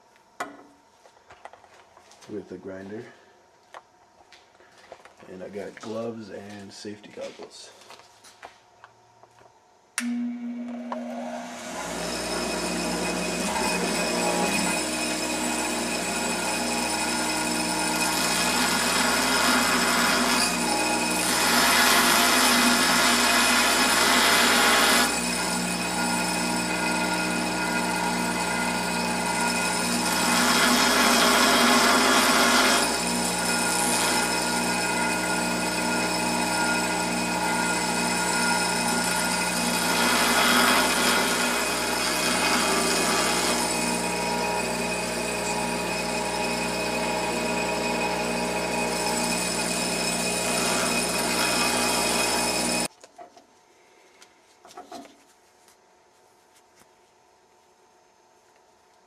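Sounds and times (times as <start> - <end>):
grinder grinding metal: 10.0 - 52.9.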